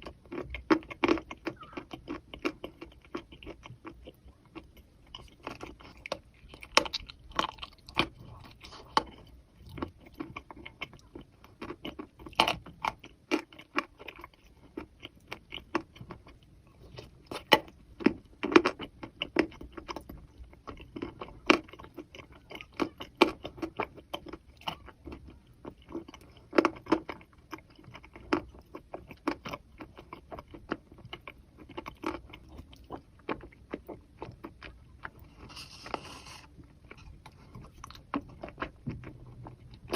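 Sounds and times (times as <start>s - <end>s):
crunching and chewing chalk: 0.0s - 39.9s.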